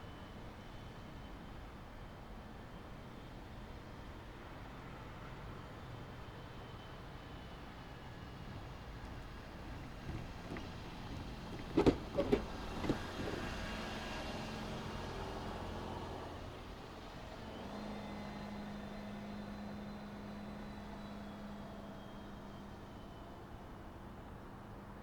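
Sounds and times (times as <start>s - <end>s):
traffic noise: 0.0s - 25.0s
tyres thumping over rails: 9.6s - 13.9s.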